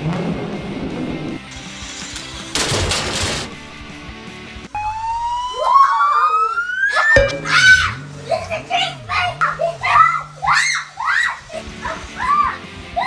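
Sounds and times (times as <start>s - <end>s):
wavering siren-like tone: 4.8s - 8.4s.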